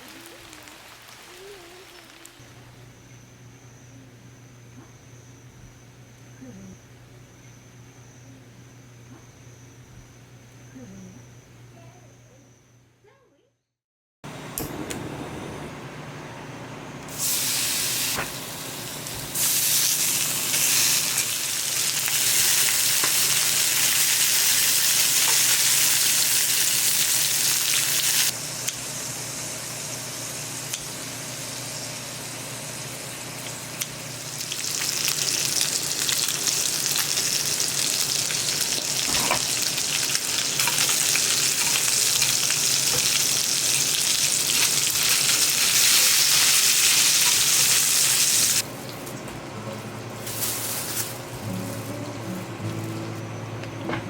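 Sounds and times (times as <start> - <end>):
food sizzling in a hot pan: 0.0 - 2.6, 17.1 - 48.6.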